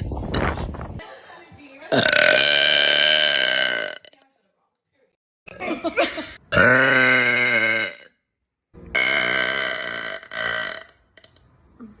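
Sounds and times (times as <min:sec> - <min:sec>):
deep burps: 0:01.9 - 0:04.2, 0:05.5 - 0:08.2, 0:08.9 - 0:11.5.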